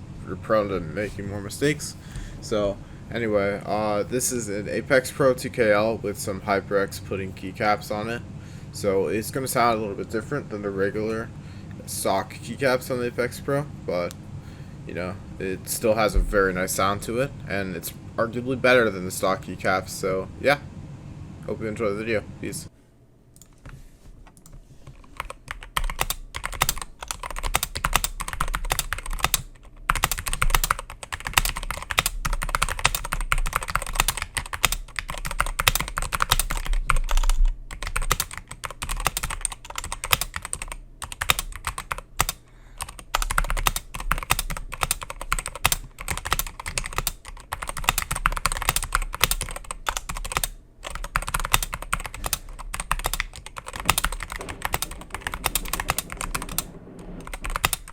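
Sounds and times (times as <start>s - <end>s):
mechanical keyboard typing: 24.4s - 57.9s.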